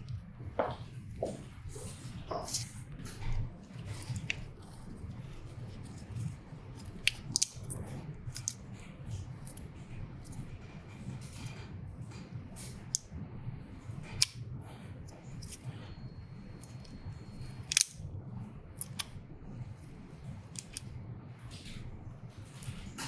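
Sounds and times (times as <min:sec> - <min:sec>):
low steady hum: 0:00.0 - 0:23.0
small plastic clicks: 0:17.7 - 0:18.0, 0:20.5 - 0:20.8.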